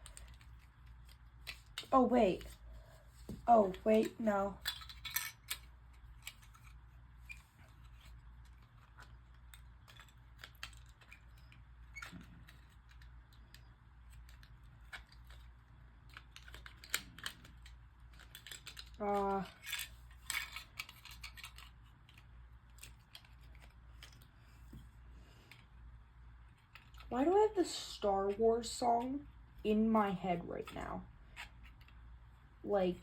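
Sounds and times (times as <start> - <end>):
plastic mouse parts clicking: 8.0 - 19.0.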